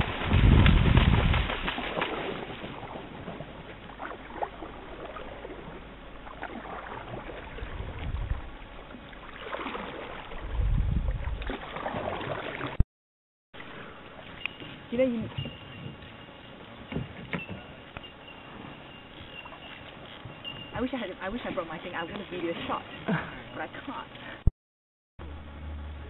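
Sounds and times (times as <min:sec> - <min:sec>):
wind buffeting microphone: 0:00.0 - 0:01.7, 0:07.5 - 0:08.7, 0:10.3 - 0:11.5
paddle splashing water: 0:00.0 - 0:12.8.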